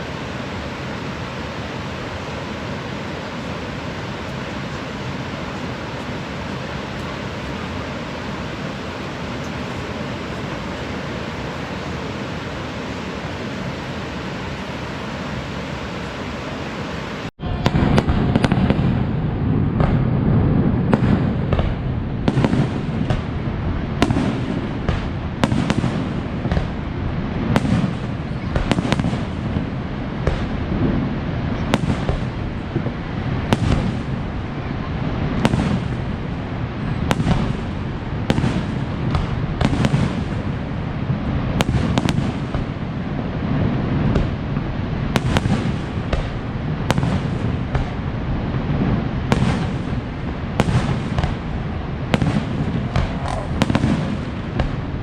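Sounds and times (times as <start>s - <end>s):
fireworks bangs and crackles: 0.0s - 55.0s
steady low roar: 51.6s - 54.3s.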